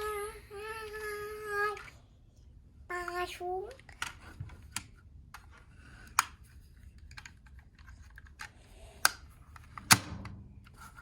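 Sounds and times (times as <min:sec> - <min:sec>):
plastic toys clicking and rattling: 0:03.0 - 0:09.9.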